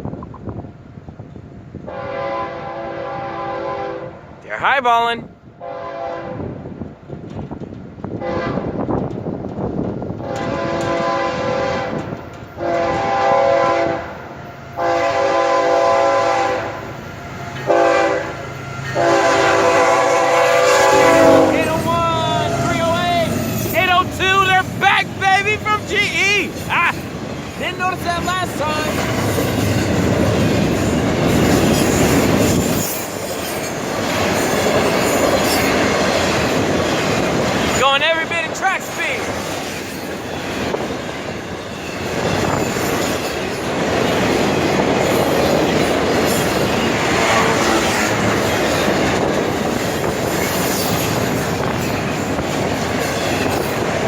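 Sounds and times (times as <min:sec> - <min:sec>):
freight train rumble: 0:00.0 - 0:54.0
locomotive air horn blasts: 0:01.9 - 0:04.3, 0:05.6 - 0:06.5, 0:08.2 - 0:08.7, 0:10.2 - 0:14.2, 0:14.8 - 0:16.8, 0:17.4 - 0:21.9
high wheel squeal: 0:20.9 - 0:24.0, 0:30.6 - 0:35.9, 0:50.2 - 0:52.3.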